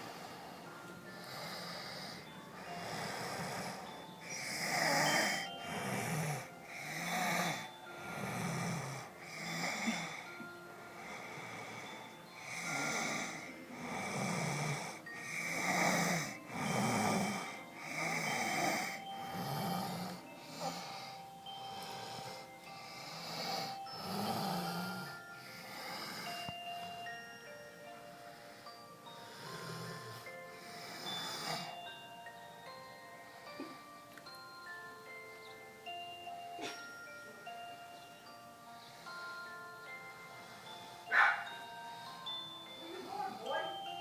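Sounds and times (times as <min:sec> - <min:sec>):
person snoring: 0:00.0 - 0:27.1, 0:28.4 - 0:31.9.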